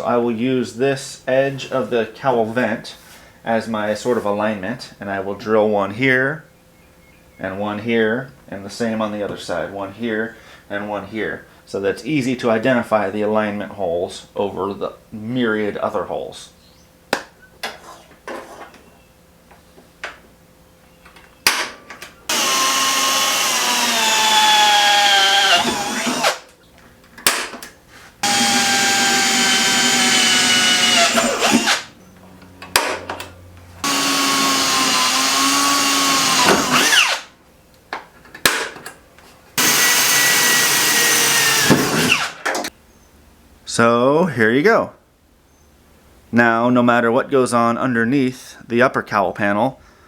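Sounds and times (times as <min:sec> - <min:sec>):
power drill boring through metal: 0:22.3 - 0:26.4, 0:28.2 - 0:31.9, 0:33.8 - 0:37.3, 0:39.6 - 0:42.4.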